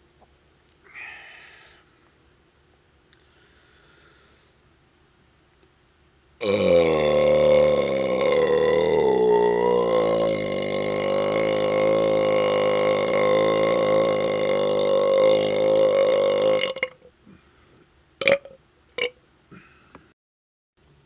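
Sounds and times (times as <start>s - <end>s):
man burping: 6.4s - 17.0s, 18.2s - 19.7s.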